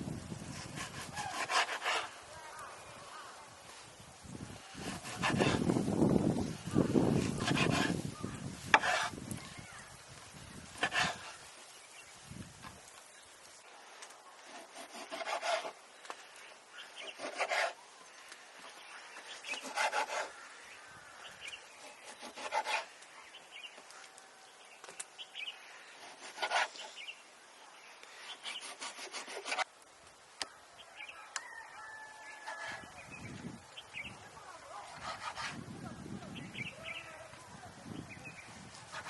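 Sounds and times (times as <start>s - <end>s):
rasping scraping strokes: 0.4s - 2.2s, 4.6s - 9.5s, 10.7s - 11.6s, 14.0s - 16.4s, 17.0s - 17.8s, 19.2s - 20.4s, 21.8s - 23.1s, 25.9s - 27.0s, 28.1s - 29.7s, 34.8s - 35.6s, 38.8s - 39.0s.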